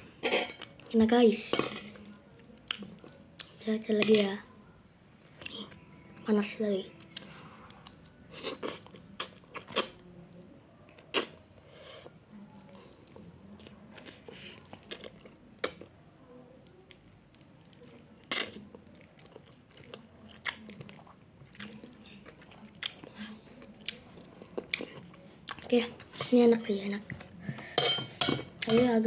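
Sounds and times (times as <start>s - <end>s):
person chewing noodles: 2.1s - 3.6s, 7.0s - 10.1s, 10.9s - 16.0s, 16.9s - 26.1s.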